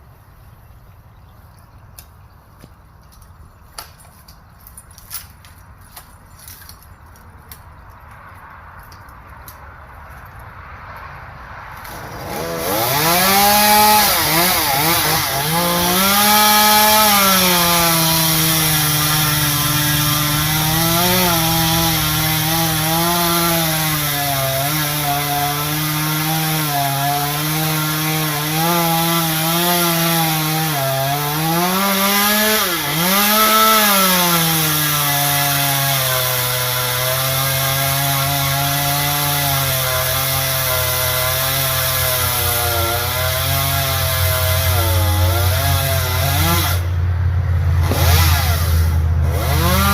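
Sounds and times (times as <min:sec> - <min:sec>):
chainsaw cutting wood: 0:11.7 - 0:47.0, 0:47.6 - 0:49.9.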